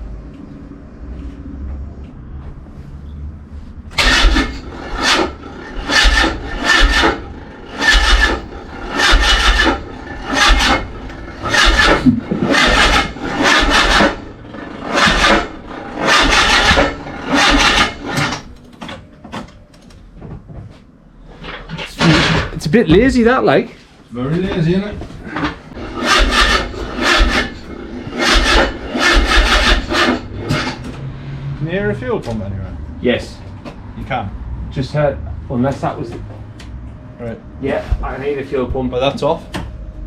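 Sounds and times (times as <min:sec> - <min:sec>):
starter motor cranking engine: 0:04.0 - 0:18.6, 0:25.5 - 0:30.9.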